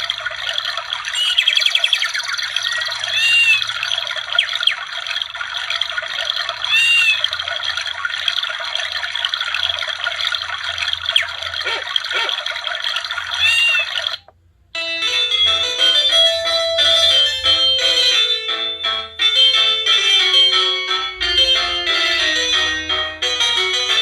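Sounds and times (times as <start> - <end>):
noisy phone ringtone: 1.1 - 4.6, 6.7 - 7.4, 13.4 - 24.0
short chirps: 1.2 - 2.0.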